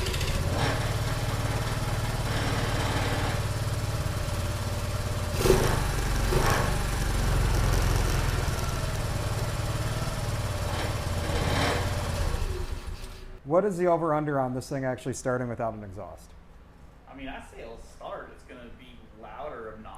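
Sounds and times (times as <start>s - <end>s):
small engine idling: 0.0s - 13.4s.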